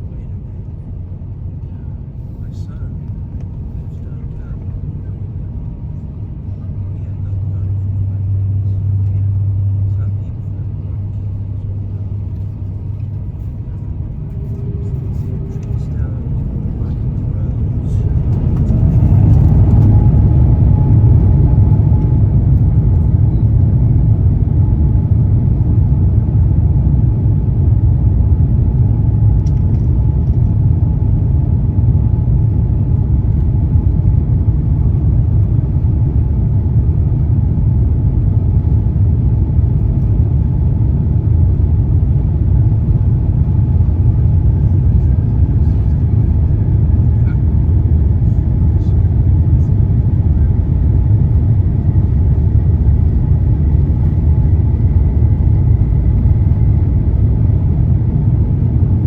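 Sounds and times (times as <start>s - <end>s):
low rumble of takeoff roll: 0.0s - 59.0s.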